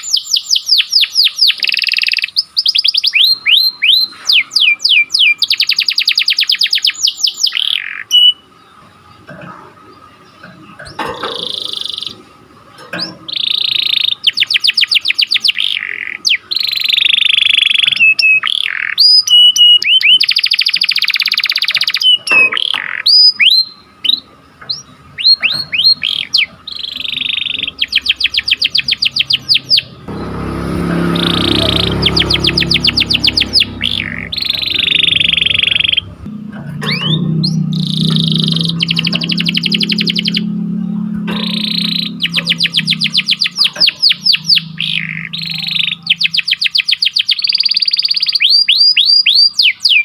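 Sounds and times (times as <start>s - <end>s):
canary singing trills: 0.0s - 50.0s
rushing noise: 30.1s - 46.0s.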